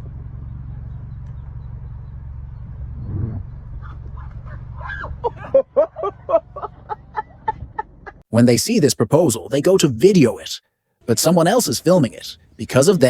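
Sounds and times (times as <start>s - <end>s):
steady low hum: 0.0s - 8.2s
short pitched animal calls: 3.0s - 4.4s.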